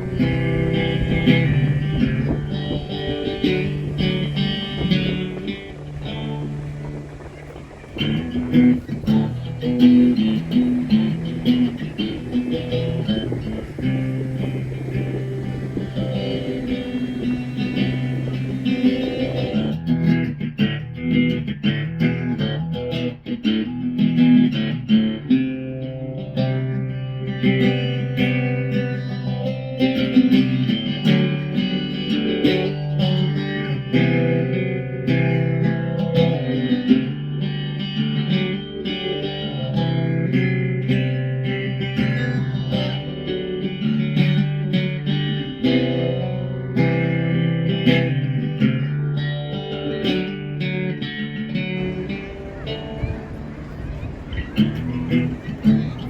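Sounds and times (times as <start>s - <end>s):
steady bass line: 0.0s - 22.9s
plucked guitar music: 0.0s - 56.0s.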